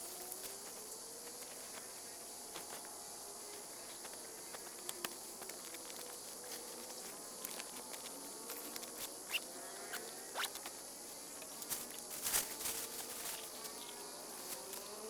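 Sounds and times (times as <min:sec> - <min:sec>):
insects buzzing: 0:00.0 - 0:15.0
small clicks and ticks: 0:04.0 - 0:09.2.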